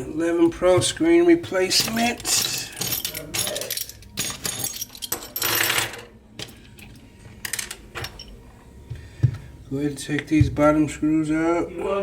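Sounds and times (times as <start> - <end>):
small metal tools clattering: 1.5 - 8.4.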